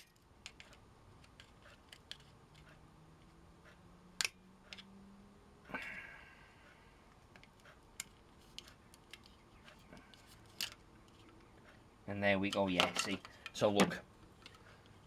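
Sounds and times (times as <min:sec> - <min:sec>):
small clicks and taps of handling: 0:07.1 - 0:11.8.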